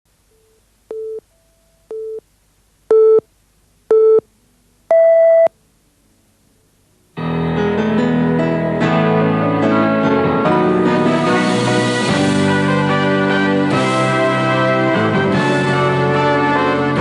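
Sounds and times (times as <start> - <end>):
electronic countdown beeps: 4.9 - 5.5
music: 7.2 - 17.0.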